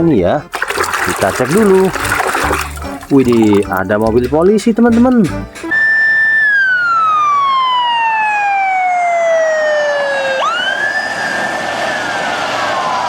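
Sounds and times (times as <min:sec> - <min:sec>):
police siren wailing: 0:05.7 - 0:11.9.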